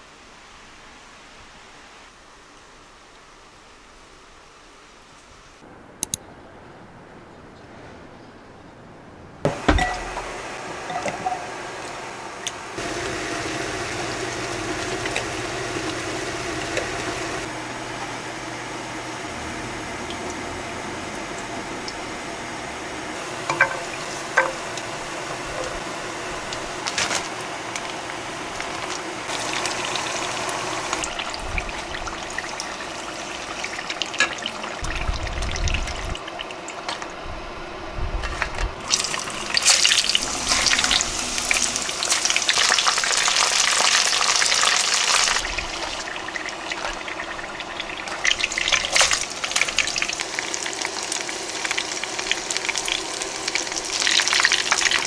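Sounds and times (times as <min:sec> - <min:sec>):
utensils clicking and knocking: 0:09.5 - 0:19.3, 0:23.2 - 0:31.2
food sizzling: 0:09.5 - 0:55.0.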